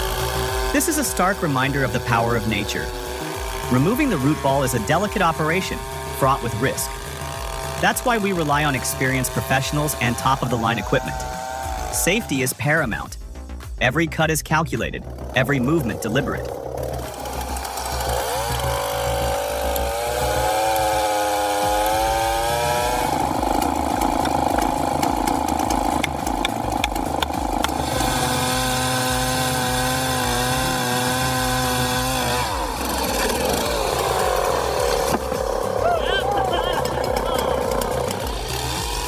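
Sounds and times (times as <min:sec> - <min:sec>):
chainsaw cutting: 0:00.0 - 0:39.0.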